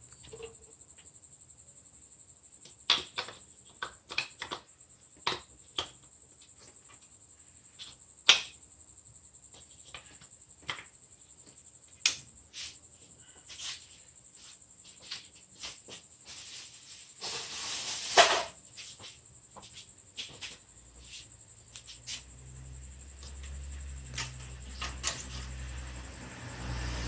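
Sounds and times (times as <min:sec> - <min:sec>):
faint high hiss: 0:16.3 - 0:19.2.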